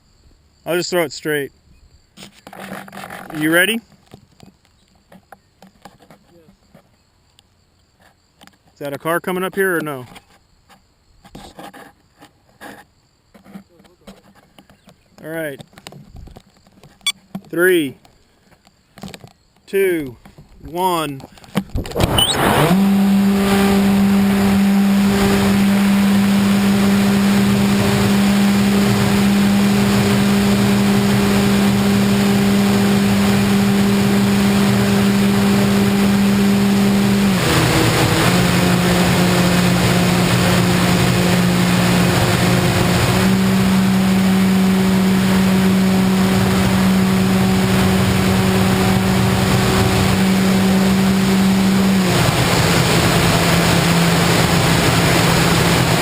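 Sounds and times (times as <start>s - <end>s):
model plane motor droning: 21.9s - 56.0s.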